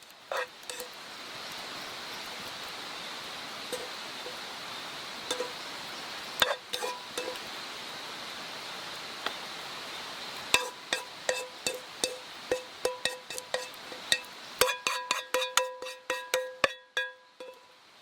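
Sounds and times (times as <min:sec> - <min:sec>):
steady hiss: 0:00.0 - 0:18.0
metallic clinks on cookpot: 0:05.3 - 0:05.6, 0:10.6 - 0:17.7.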